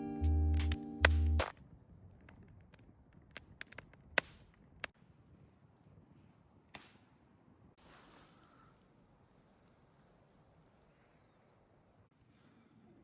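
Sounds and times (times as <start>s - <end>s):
sharp clicks and knocks: 0.6s - 1.6s, 2.2s - 4.9s.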